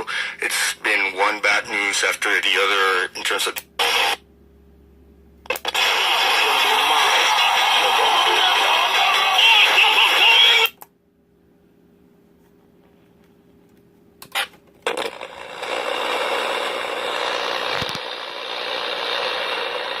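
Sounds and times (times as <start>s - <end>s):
radio broadcast: 0.0s - 4.2s, 5.5s - 10.7s
radio static hiss: 0.0s - 4.2s, 5.5s - 10.7s
faint steady hum: 0.0s - 20.0s.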